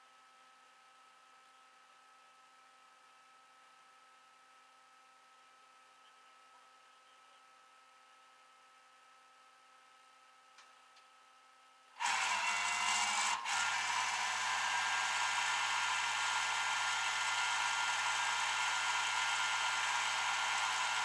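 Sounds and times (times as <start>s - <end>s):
motor machine whining: 12.0s - 21.0s.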